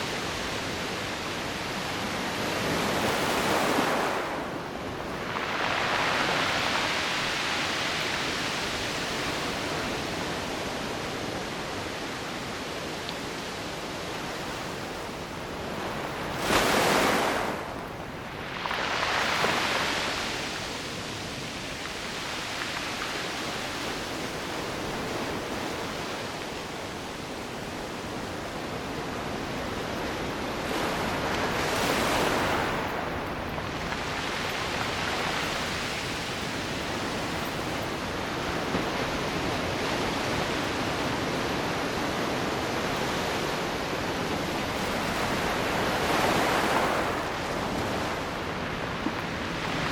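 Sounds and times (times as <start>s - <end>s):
sea waves breaking on shore: 0.0s - 49.9s.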